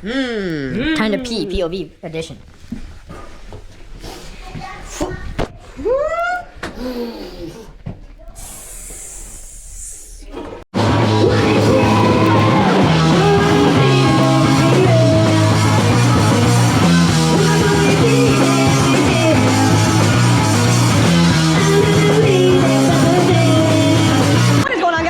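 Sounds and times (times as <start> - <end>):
loud rock music with singing: 10.8 - 24.6.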